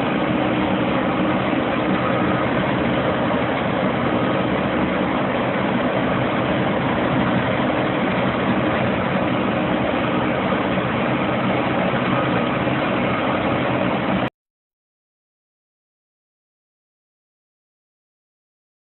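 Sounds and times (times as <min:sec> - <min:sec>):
diesel engine running: 0:00.0 - 0:14.3.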